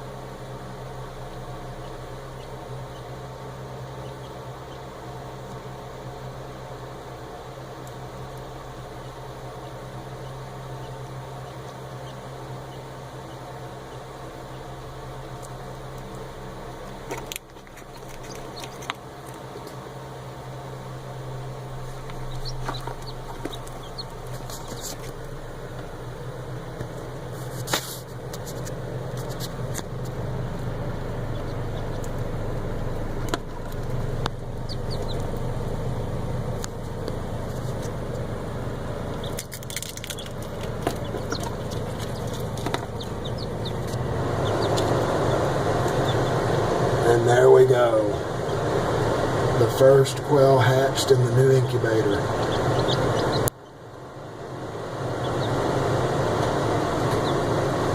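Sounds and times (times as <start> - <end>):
incubator humming: 0.0 - 57.9
chick peeping: 1.2 - 5.6, 8.9 - 16.1, 17.1 - 19.0, 21.9 - 25.2, 31.2 - 35.6, 39.1 - 46.8, 52.1 - 53.7, 55.1 - 57.6.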